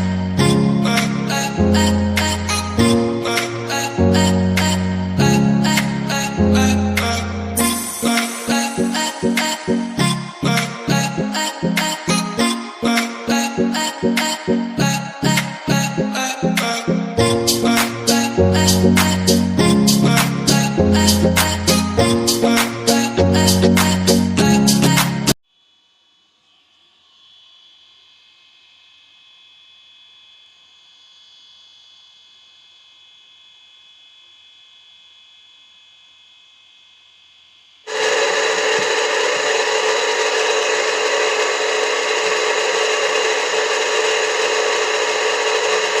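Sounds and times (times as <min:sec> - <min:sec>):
electric water pump whining: 0:37.9 - 0:46.0.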